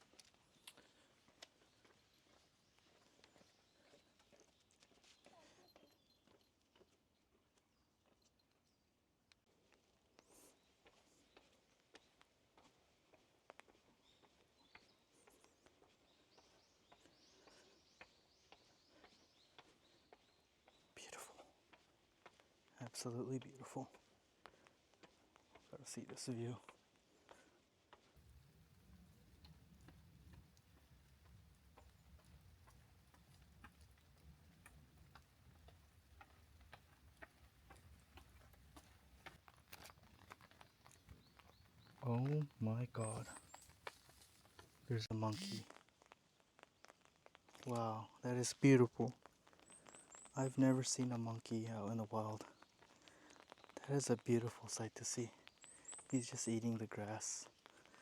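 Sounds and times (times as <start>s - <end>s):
faint footsteps on trail: 0.0s - 58.0s
bird chirping: 28.2s - 45.6s
footsteps on forest trail: 28.2s - 47.8s.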